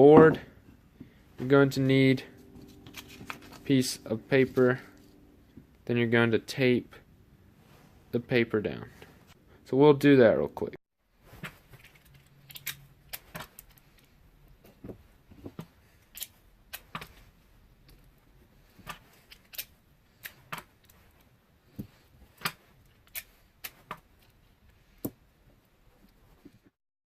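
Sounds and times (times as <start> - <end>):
tape and paper rustling: 2.6 - 3.8.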